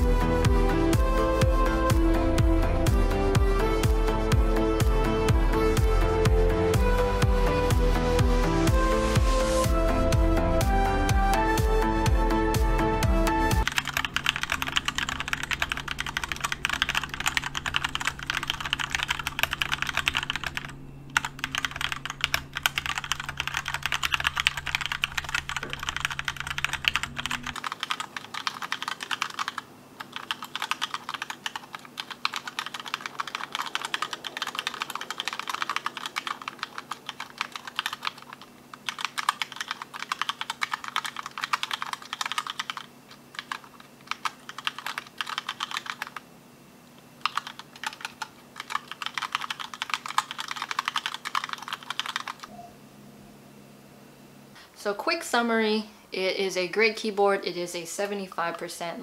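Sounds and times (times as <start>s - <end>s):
mechanical keyboard typing: 13.5s - 46.2s, 47.2s - 52.5s.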